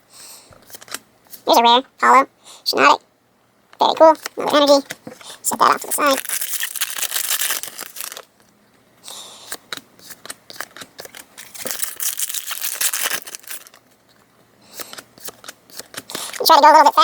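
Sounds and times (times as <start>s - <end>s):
cards being handled: 4.0s - 8.5s, 9.5s - 13.8s, 14.7s - 16.4s
foil wrappers crinkling and tearing: 5.5s - 8.3s, 10.1s - 13.8s, 15.8s - 16.5s.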